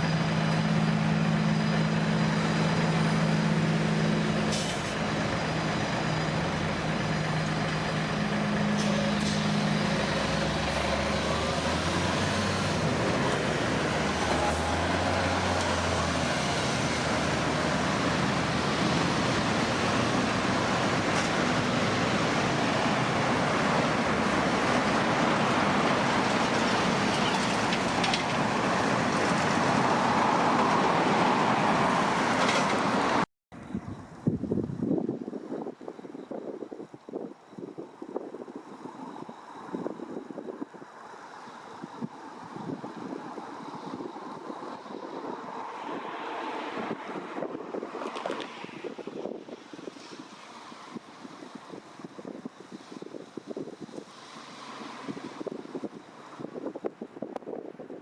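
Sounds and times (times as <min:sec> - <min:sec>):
loud rush of vehicle noise: 0:00.0 - 0:58.0.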